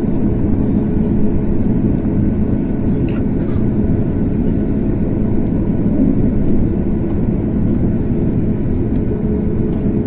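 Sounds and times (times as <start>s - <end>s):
continuous low rumble: 0.0s - 10.0s
jet engines humming: 0.0s - 10.0s.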